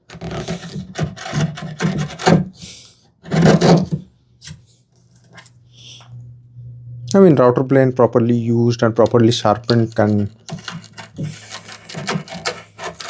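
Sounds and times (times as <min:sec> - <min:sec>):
chisel scraping wood: 0:00.0 - 0:02.6, 0:03.2 - 0:04.0, 0:09.4 - 0:13.0.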